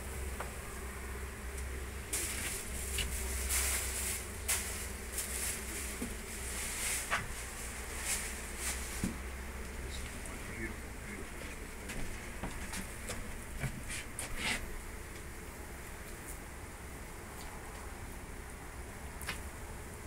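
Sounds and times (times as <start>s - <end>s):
bees buzzing: 0.0s - 20.0s
noisy rustles: 2.1s - 9.2s.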